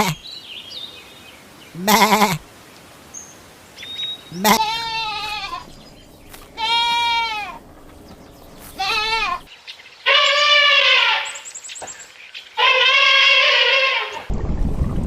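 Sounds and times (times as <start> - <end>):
farm animal bleating: 0.0 - 0.2, 1.8 - 2.4, 4.3 - 9.5, 10.1 - 11.3, 12.6 - 14.2.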